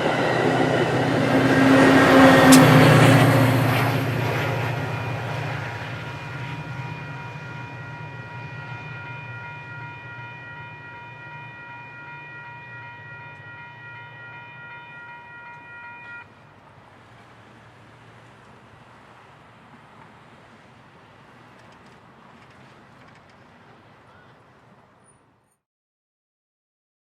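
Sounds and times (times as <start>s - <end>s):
railroad crossing bell ringing: 0.0s - 16.4s
train rumbling: 0.0s - 25.5s.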